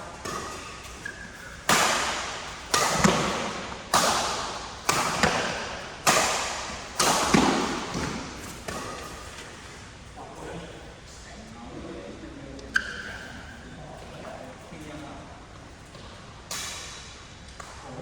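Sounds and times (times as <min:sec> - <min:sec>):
rackets hitting shuttlecock: 0:00.0 - 0:09.8, 0:15.9 - 0:17.8.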